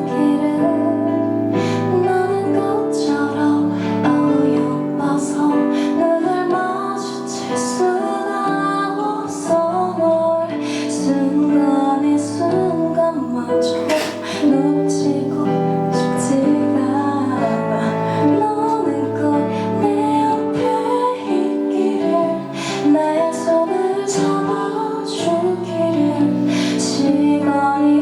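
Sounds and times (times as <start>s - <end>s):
guitar accompaniment: 0.0s - 28.0s
woman singing: 0.0s - 28.0s.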